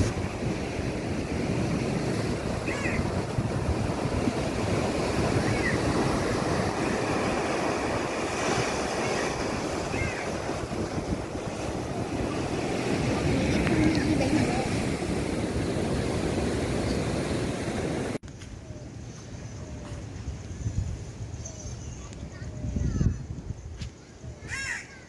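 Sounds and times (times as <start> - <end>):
surf washing in: 0.0 - 18.2.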